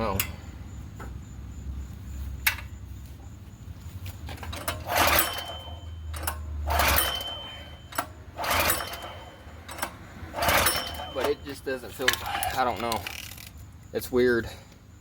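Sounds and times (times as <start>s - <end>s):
engine cranking whirring whine: 4.2s - 13.6s
engine recoil rope pulls: 4.3s - 13.6s.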